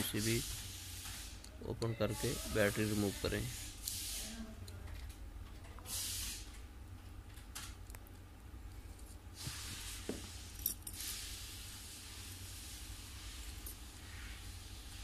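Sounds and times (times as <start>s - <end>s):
low steady hum: 6.4s - 15.0s.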